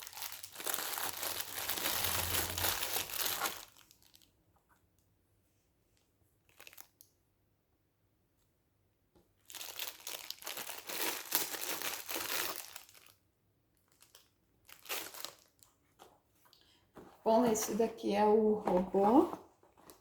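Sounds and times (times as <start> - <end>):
packaging crinkling and tearing: 0.0 - 4.3, 6.4 - 7.0, 9.4 - 13.2, 13.8 - 15.7.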